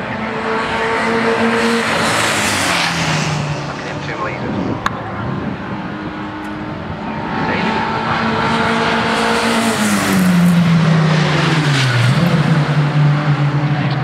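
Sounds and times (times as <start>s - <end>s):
racing cars passing at speed: 0.0s - 14.0s.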